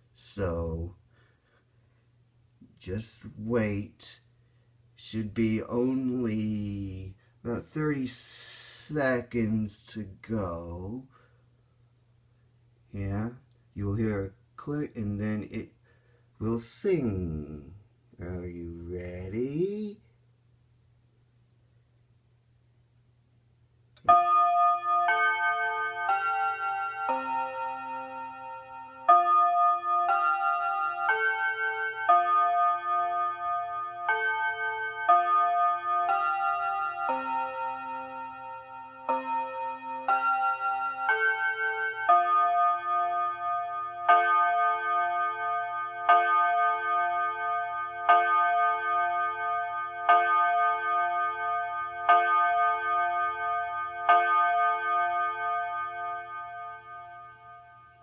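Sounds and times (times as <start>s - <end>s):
clock striking hour chords: 5.0s - 9.7s, 24.0s - 58.0s
clock chime melody: 24.0s - 58.0s.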